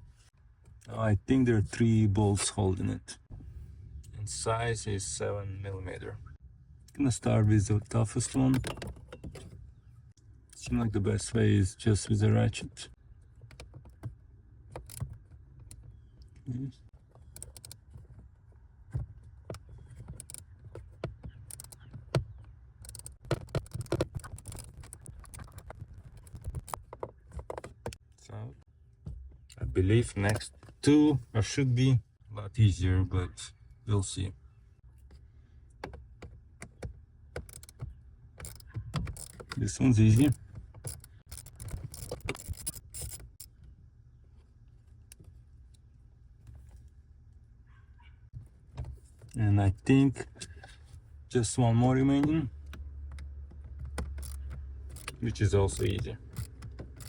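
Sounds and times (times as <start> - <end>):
ratchet clicking and scraping: 14.7 - 15.8, 17.1 - 17.9, 19.5 - 28.0, 37.4 - 43.6, 52.7 - 57.0.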